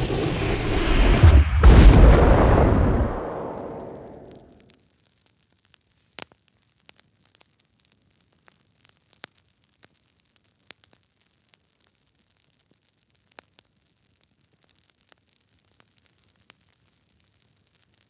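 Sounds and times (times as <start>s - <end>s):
fire crackling: 0.0s - 4.4s
fire pops and snaps: 0.0s - 4.4s
low hiss: 0.0s - 4.4s.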